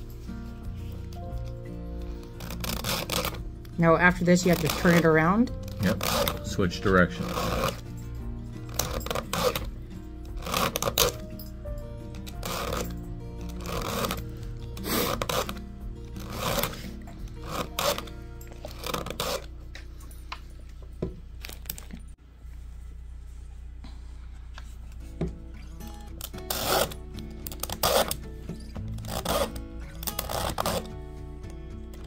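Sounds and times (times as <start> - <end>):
background music: 0.0 - 21.4, 24.8 - 32.0
file rasping on chainsaw chain: 5.7 - 6.5, 7.2 - 7.8, 8.7 - 9.7, 10.3 - 11.2, 12.2 - 14.2, 14.8 - 15.6, 16.2 - 19.5, 26.3 - 28.2, 28.9 - 30.9.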